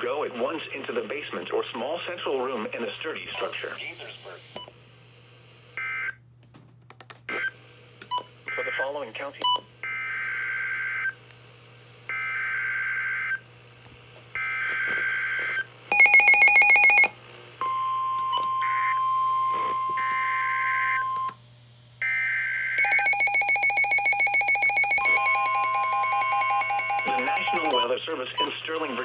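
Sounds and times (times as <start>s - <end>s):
rapidly pulsing electronic alarm: 14.4s - 17.1s, 22.0s - 28.0s
steady warning alarm tone: 14.4s - 21.3s, 22.0s - 28.0s.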